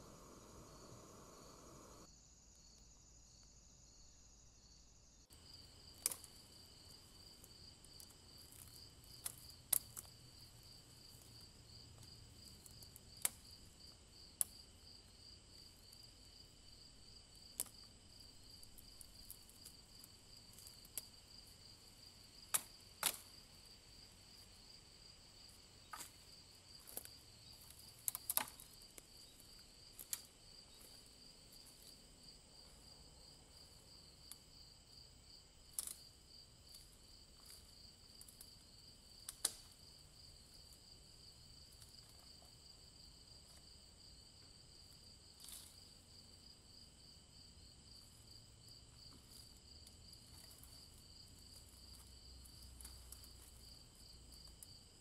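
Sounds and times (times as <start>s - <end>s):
crickets trilling: 0.0s - 55.0s.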